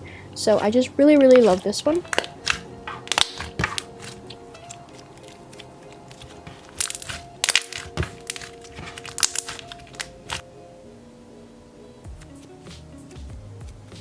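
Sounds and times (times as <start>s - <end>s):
soft background music: 0.0s - 14.0s
slime popping and crackling: 1.2s - 10.4s.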